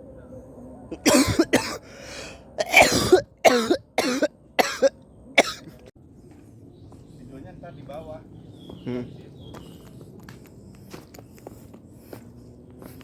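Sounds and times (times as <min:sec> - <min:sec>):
person coughing harshly: 0:01.0 - 0:01.8, 0:02.6 - 0:05.8.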